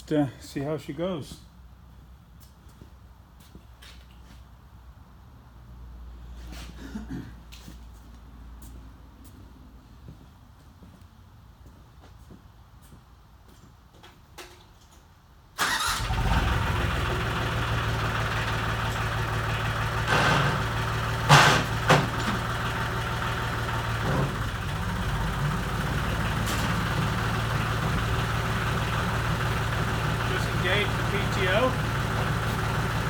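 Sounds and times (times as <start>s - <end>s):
tractor diesel engine running: 15.6s - 33.0s.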